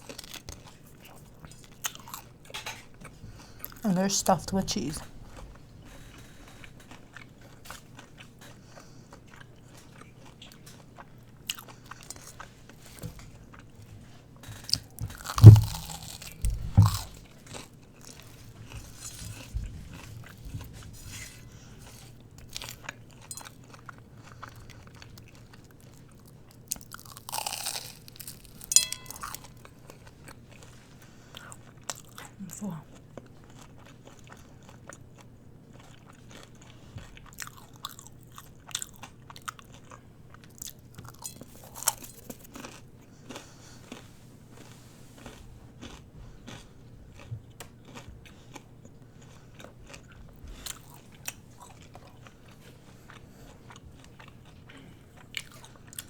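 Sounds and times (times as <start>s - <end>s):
chewing and crunching food: 0.0s - 56.0s
low thumps: 15.0s - 17.2s
rustling scrape: 18.8s - 22.2s.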